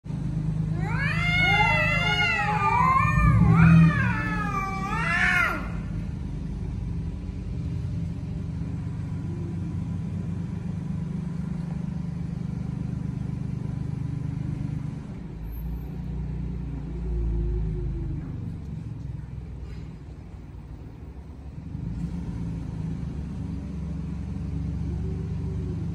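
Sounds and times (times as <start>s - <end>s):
cat yowling: 0.7s - 6.0s.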